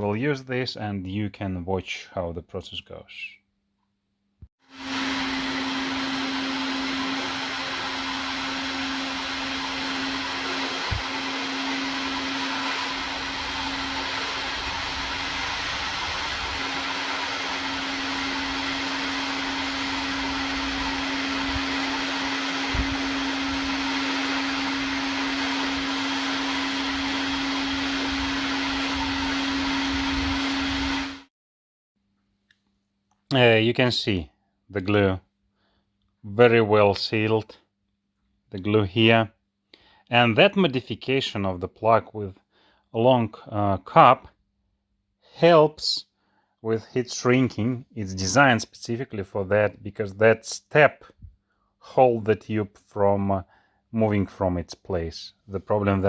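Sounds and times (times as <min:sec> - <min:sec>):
heat gun blowing: 0:04.6 - 0:31.3.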